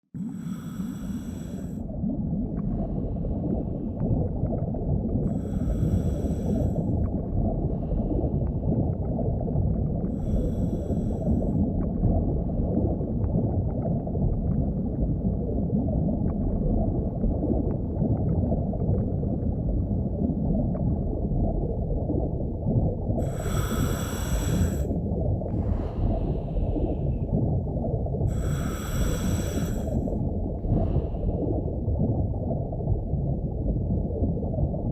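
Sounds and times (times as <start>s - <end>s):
muffled underwater rumbling: 0.1s - 34.9s
breath-like hissing bursts: 0.3s - 1.7s, 5.5s - 6.8s, 23.2s - 24.9s, 28.3s - 30.1s.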